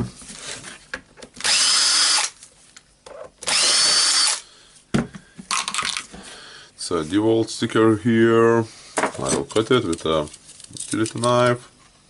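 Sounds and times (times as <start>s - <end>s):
cordless power tool motor whine: 1.4s - 2.3s, 3.4s - 4.4s.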